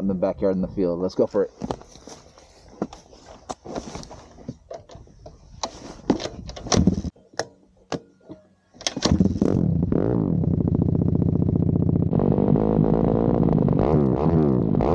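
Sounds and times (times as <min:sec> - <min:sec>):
motorbike engine running: 0:09.1 - 0:13.9.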